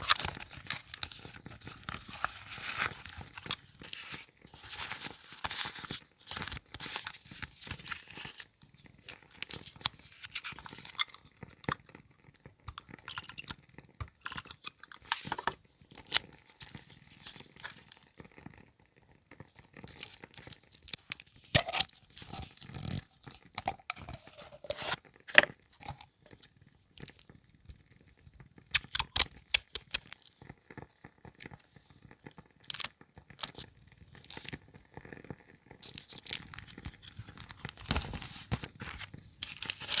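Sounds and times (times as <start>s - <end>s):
paper rustling and crinkling: 0.0s - 11.8s, 14.8s - 18.1s, 19.8s - 26.5s, 35.8s - 40.0s
sharp clicks and taps: 12.7s - 14.6s.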